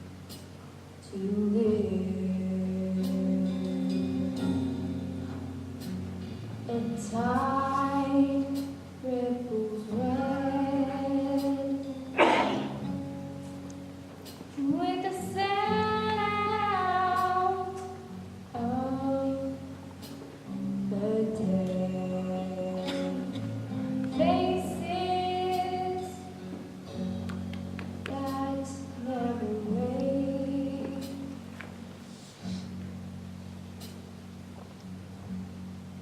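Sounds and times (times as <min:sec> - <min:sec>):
instrumental accompaniment: 0:00.0 - 0:36.0
woman singing slow song: 0:01.0 - 0:05.6, 0:06.6 - 0:13.4, 0:14.5 - 0:31.9.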